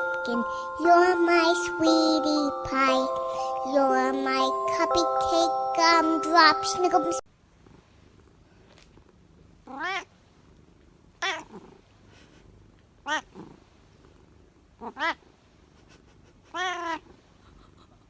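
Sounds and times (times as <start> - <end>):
cat meowing: 9.7 - 10.1, 11.2 - 11.6, 13.0 - 13.3, 14.8 - 15.2, 16.5 - 17.0.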